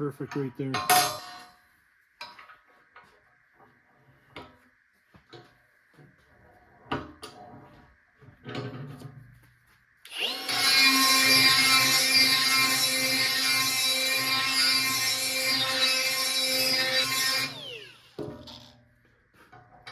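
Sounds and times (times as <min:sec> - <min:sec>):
die grinder whining: 0:10.1 - 0:18.8.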